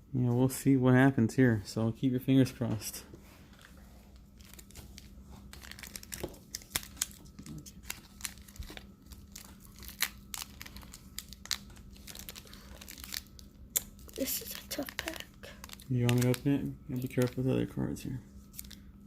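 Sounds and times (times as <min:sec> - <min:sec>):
plastic wrapper crinkling: 0:04.3 - 0:17.5.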